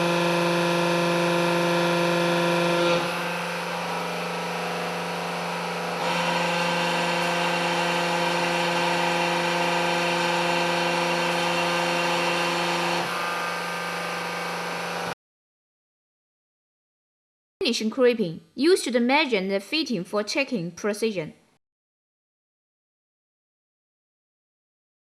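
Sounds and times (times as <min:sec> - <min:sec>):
hydraulic pump humming: 0:00.0 - 0:15.2.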